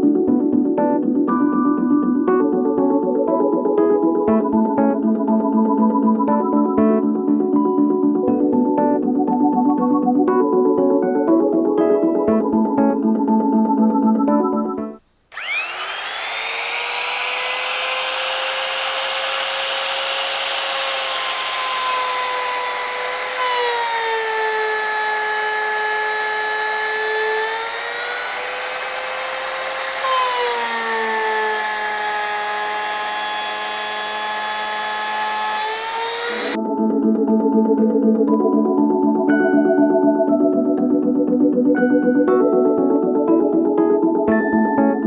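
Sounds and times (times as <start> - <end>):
power tool motor whine: 15.3 - 36.6.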